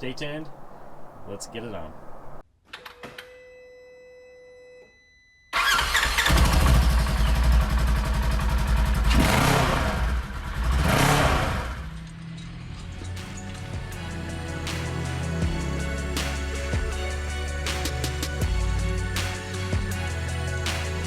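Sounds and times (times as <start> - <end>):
utility vehicle engine revving: 5.7 - 21.0.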